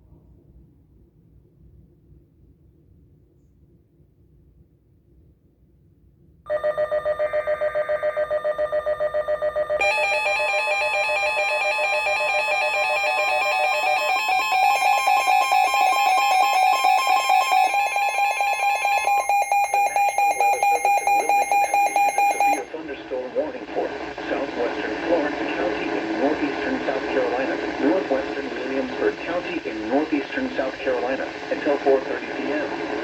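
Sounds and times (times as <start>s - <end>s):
layered alarm tones: 6.5s - 22.7s
pulsing electronic alarm: 6.5s - 22.7s.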